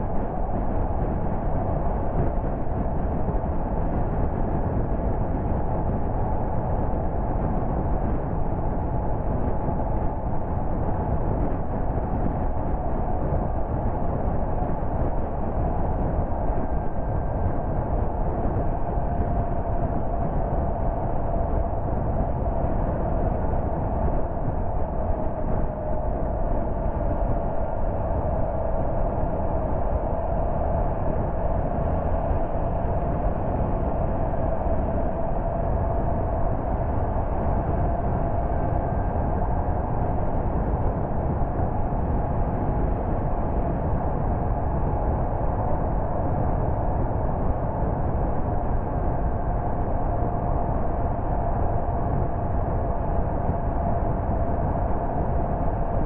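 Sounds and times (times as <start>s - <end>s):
faint steady hum: 0.0s - 56.0s.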